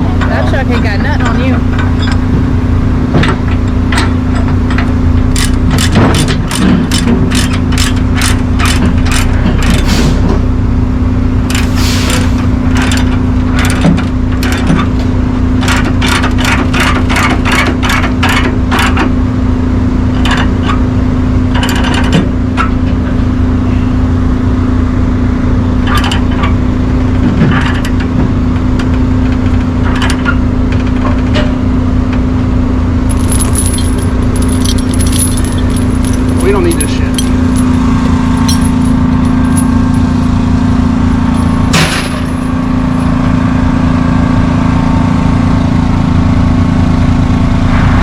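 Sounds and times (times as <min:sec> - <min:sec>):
engine idling: 0:00.0 - 0:48.0
chains clinking and rattling: 0:33.1 - 0:40.3.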